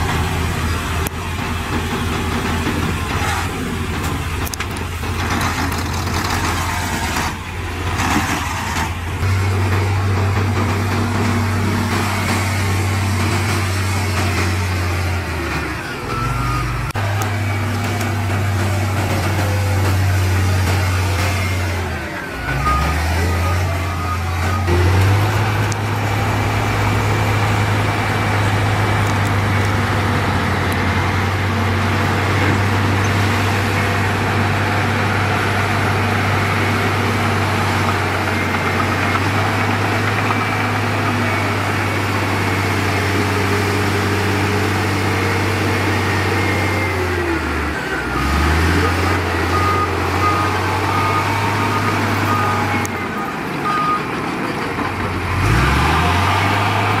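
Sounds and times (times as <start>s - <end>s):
heavy diesel engine running: 0.0s - 57.0s
reversing alarm beeping: 11.9s - 28.4s, 31.2s - 56.5s.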